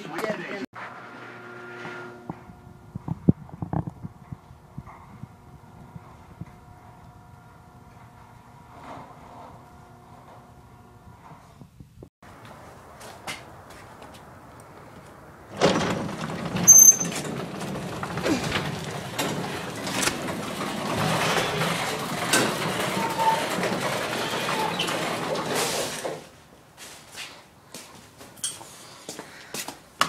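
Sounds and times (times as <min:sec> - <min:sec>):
garage door opener motor running: 0:00.8 - 0:11.4, 0:15.5 - 0:26.1.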